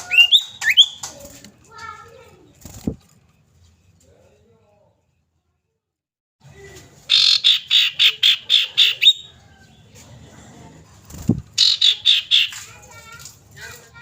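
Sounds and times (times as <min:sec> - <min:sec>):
bird calling sharp repeated notes: 0:00.0 - 0:01.2, 0:07.1 - 0:09.3, 0:11.6 - 0:12.7.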